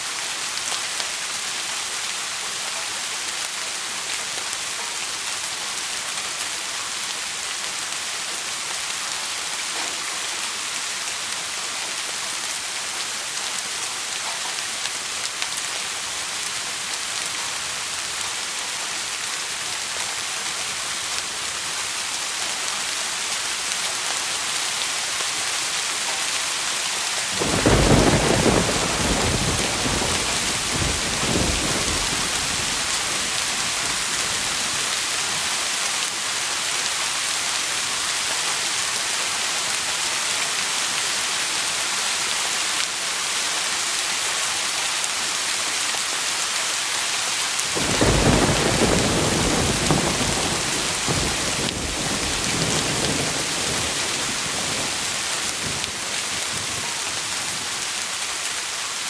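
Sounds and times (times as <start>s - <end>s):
heavy rain hissing: 14.7s - 59.0s
thunder rumbling: 27.3s - 35.5s, 47.7s - 57.0s.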